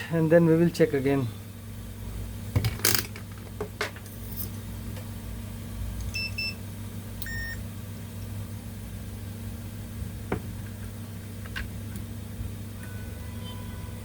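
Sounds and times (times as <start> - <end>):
multimeter beeps: 6.1 - 6.6, 7.2 - 7.6.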